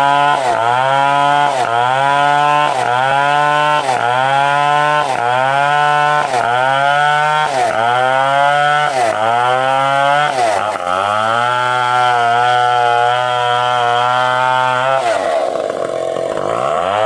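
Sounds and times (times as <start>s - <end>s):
chainsaw cutting wood: 0.0s - 17.0s.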